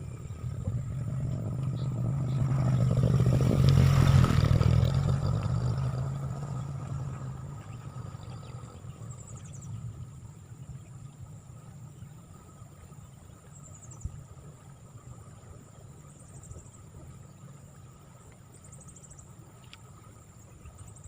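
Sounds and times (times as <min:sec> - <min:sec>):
engine passing by: 0:00.0 - 0:11.7.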